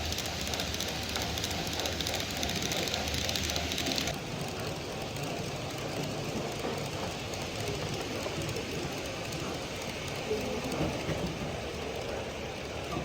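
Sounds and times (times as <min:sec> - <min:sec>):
model trains running: 0:00.0 - 0:13.0.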